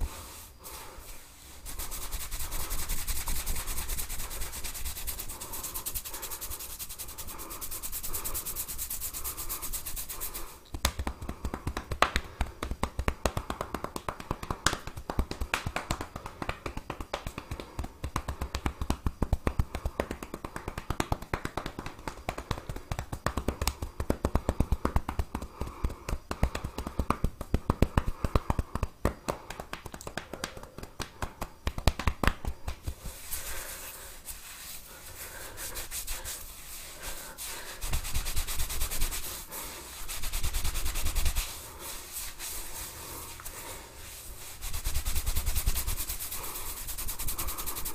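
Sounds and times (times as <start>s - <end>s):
hands rubbing hair and scalp: 0.0s - 47.9s.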